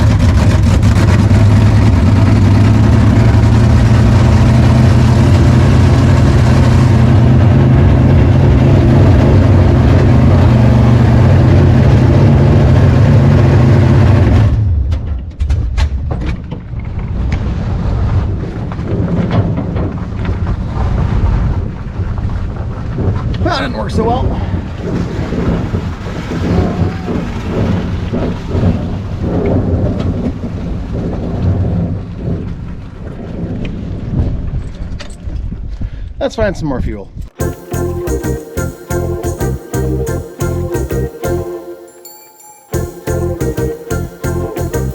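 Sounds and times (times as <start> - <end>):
loud car engine running: 0.0 - 14.8.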